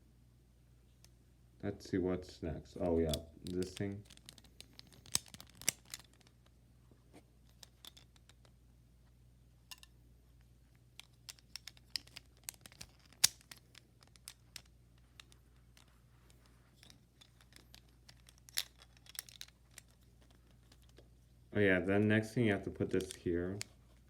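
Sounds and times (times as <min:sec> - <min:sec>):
plastic puzzle cube clicks: 0:03.1 - 0:06.3, 0:11.0 - 0:15.4, 0:16.8 - 0:21.0.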